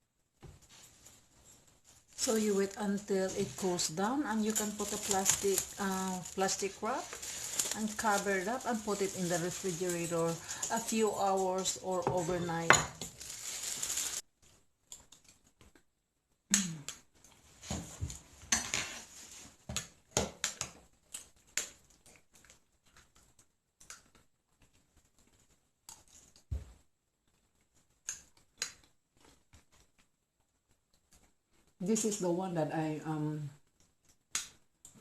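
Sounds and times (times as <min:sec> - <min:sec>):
plastic wrap crinkling: 0:01.9 - 0:14.3.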